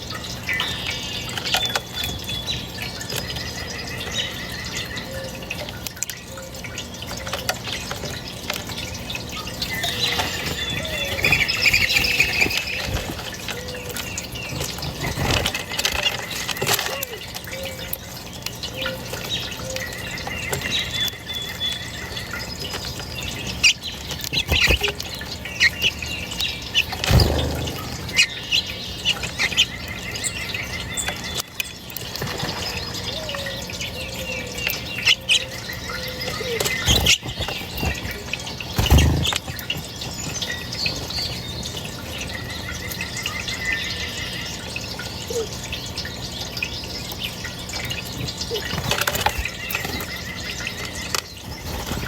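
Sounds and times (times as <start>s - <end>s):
songbirds chirping: 0.0s - 52.0s
rapid bird trill: 18.8s - 31.4s
loud low thuds: 27.1s - 28.2s.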